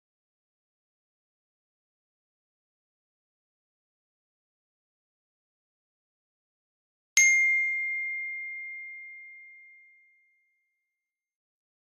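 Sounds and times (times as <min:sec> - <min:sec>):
bright bell ding: 0:07.2 - 0:10.0.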